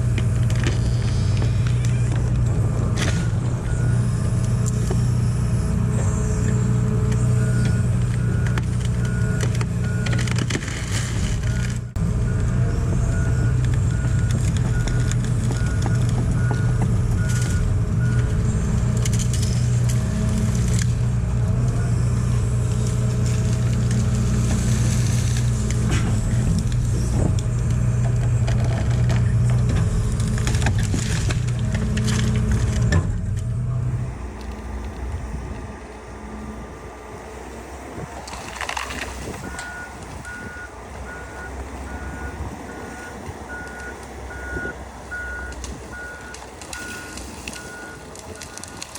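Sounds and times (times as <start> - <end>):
reversing alarm beeping: 0.0 - 10.2, 39.4 - 48.9
excavator diesel engine running: 0.0 - 48.9
knocks and clunks: 5.9 - 21.0, 25.4 - 33.5.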